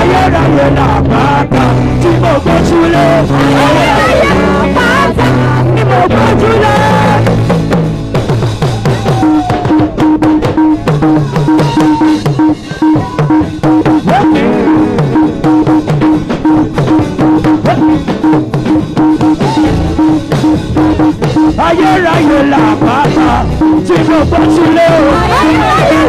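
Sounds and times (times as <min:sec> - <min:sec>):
bass line: 0:00.0 - 0:26.0
drum kit beat: 0:00.0 - 0:26.0
pulsing keyboard note: 0:08.6 - 0:26.0.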